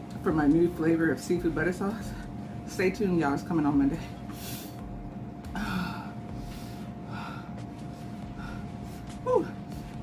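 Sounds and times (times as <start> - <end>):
person breathing hard: 5.5 - 10.0.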